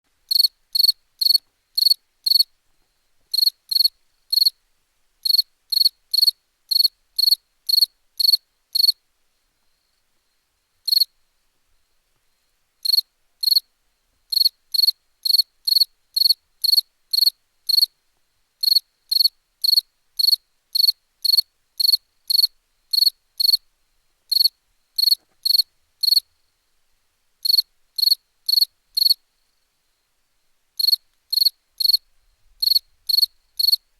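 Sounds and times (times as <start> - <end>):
cricket chirping: 0.3 - 2.5, 3.3 - 4.6, 5.2 - 9.0, 9.6 - 11.2, 12.3 - 13.7, 14.3 - 18.0, 18.6 - 23.6, 24.3 - 26.6, 27.4 - 30.1, 30.8 - 33.9.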